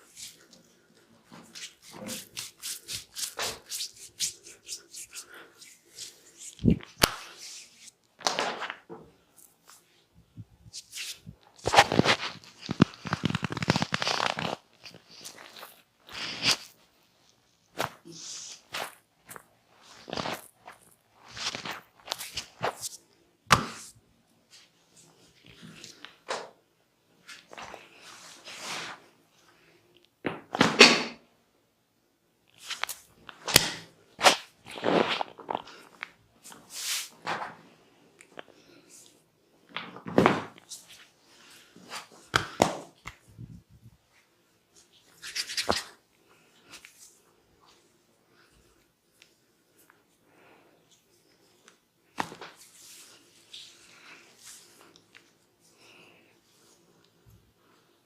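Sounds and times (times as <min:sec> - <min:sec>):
hands rubbing and slapping skin: 0:00.1 - 0:00.7, 0:01.3 - 0:09.8, 0:10.7 - 0:16.8, 0:17.7 - 0:24.7, 0:32.5 - 0:37.6, 0:39.7 - 0:43.3, 0:45.0 - 0:46.0, 0:51.6 - 0:55.3
hands slapping skin: 0:01.5 - 0:08.8, 0:32.6 - 0:34.5, 0:42.3 - 0:43.2, 0:52.2 - 0:52.6.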